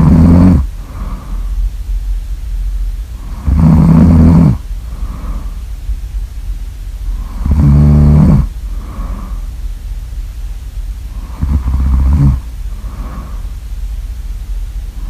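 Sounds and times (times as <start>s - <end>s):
loud snoring: 0.0s - 1.3s, 3.2s - 5.5s, 7.1s - 9.4s, 11.1s - 13.5s
soft breath out: 0.7s - 1.7s, 4.8s - 5.7s, 8.6s - 9.6s, 12.7s - 13.6s.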